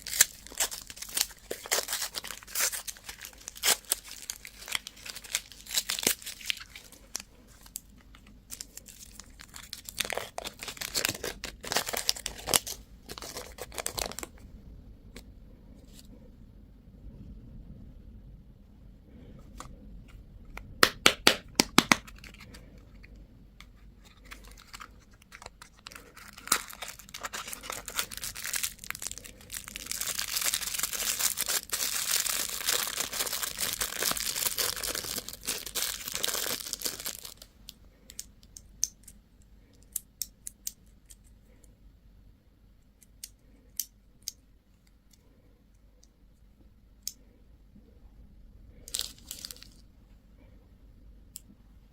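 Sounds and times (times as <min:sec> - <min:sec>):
packaging crinkling and tearing: 0:00.0 - 0:14.4, 0:21.6 - 0:23.1, 0:24.0 - 0:37.5, 0:48.9 - 0:49.8.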